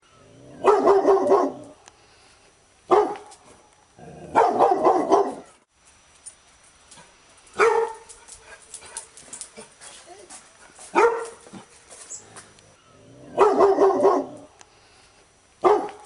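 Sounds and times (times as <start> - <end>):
dog barking: 0.6 - 1.7, 2.9 - 3.3, 4.3 - 5.6, 7.6 - 8.1, 10.9 - 11.4, 13.3 - 14.5, 15.6 - 16.0.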